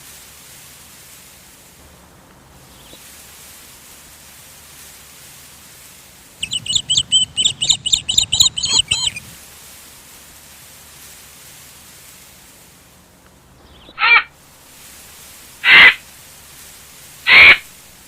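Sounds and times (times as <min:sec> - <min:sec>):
steady background hiss: 0:00.0 - 0:18.0
high-pitched animal calls: 0:06.4 - 0:09.3, 0:13.9 - 0:14.3, 0:15.6 - 0:16.0, 0:17.3 - 0:17.7.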